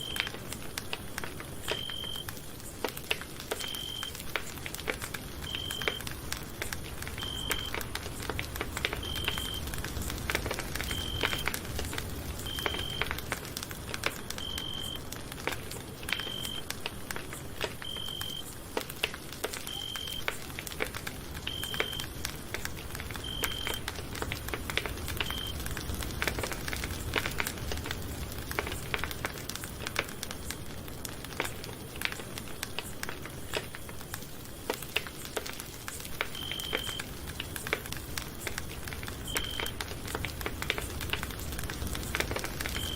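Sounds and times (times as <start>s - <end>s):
campfire crackling: 0.0s - 42.9s.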